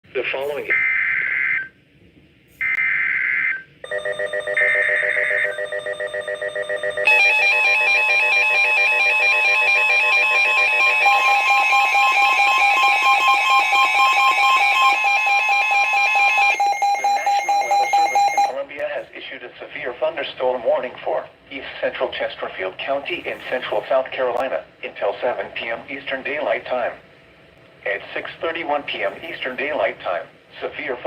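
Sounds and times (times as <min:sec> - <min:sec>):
pulsing electronic alert alarm: 0:02.6 - 0:18.6.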